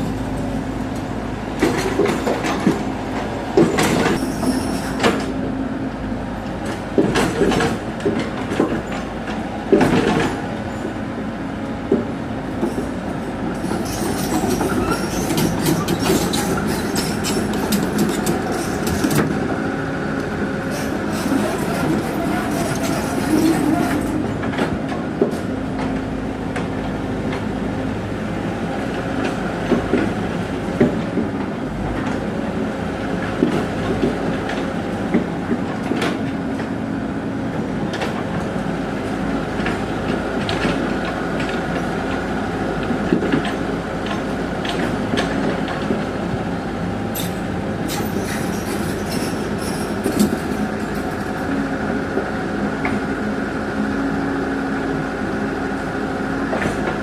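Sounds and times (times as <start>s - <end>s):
steel tracks clanking and squealing: 0.0s - 5.5s, 6.4s - 11.1s, 11.9s - 26.0s, 47.0s - 52.2s.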